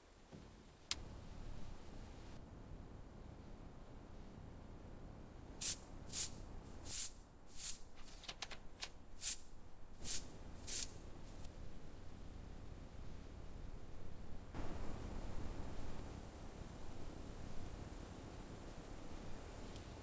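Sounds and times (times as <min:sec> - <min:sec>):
short hissing sprays: 0:05.6 - 0:08.0, 0:09.2 - 0:11.5.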